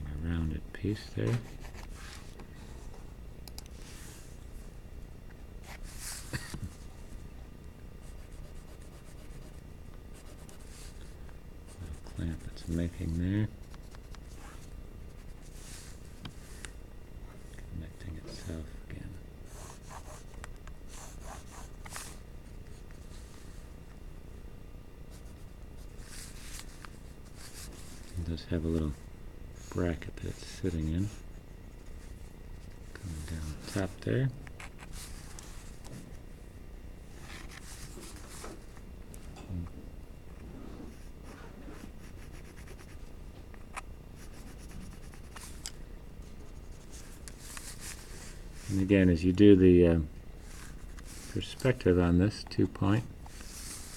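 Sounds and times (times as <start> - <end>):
pencil scratching on paper: 8.1 - 10.7, 19.5 - 20.3, 20.9 - 21.7, 41.7 - 43.0, 44.2 - 45.4.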